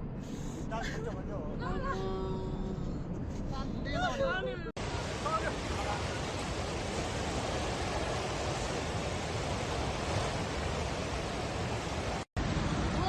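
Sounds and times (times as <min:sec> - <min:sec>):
floodwater rushing: 0:04.8 - 0:13.0.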